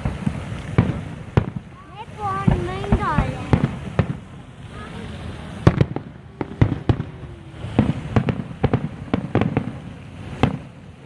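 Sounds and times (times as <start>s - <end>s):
fireworks bangs and pops: 0.0s - 11.0s
low rumble: 3.4s - 9.7s.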